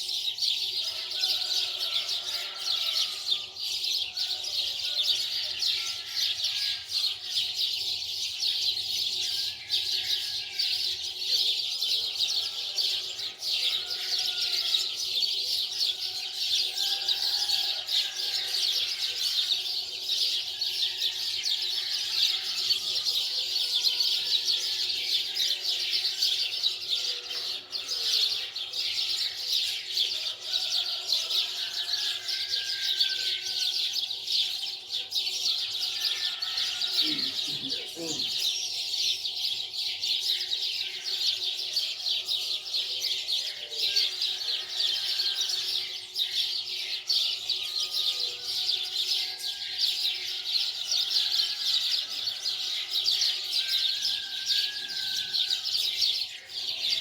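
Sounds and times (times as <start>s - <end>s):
small birds chirping: 31.9s - 49.4s.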